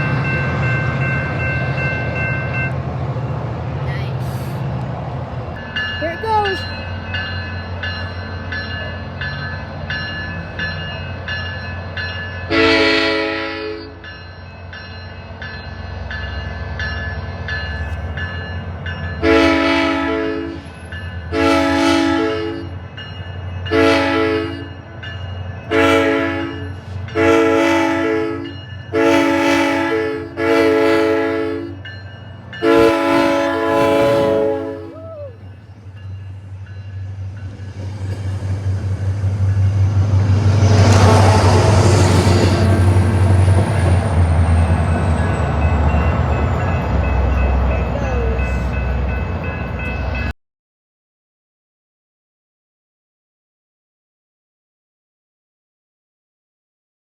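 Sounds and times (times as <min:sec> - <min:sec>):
low rumble of train: 0:00.0 - 0:50.4
train air horn blasts: 0:12.5 - 0:14.0, 0:19.2 - 0:20.7, 0:21.3 - 0:22.7, 0:23.7 - 0:24.7, 0:25.7 - 0:31.8, 0:32.6 - 0:35.2.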